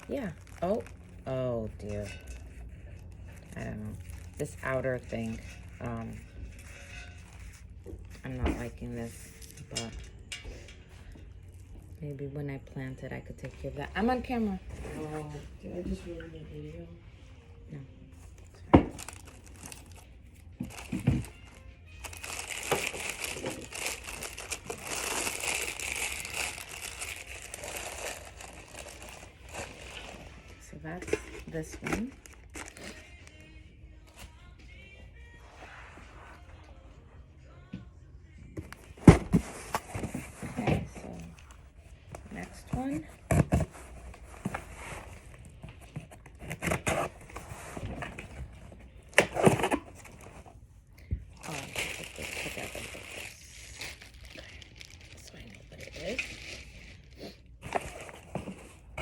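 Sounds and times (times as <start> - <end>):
packaging crinkling and rustling: 0.0 - 8.1, 18.3 - 33.5, 51.4 - 59.0.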